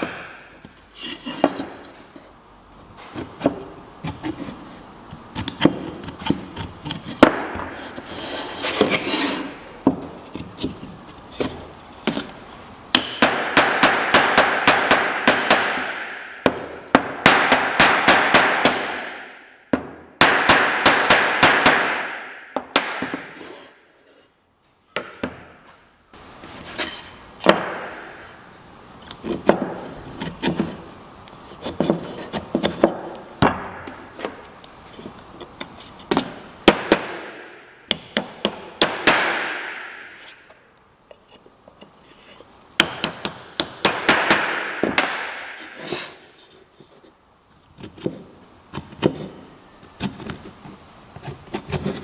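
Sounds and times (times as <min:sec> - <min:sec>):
rasping strokes on wood: 0:05.3 - 0:09.6.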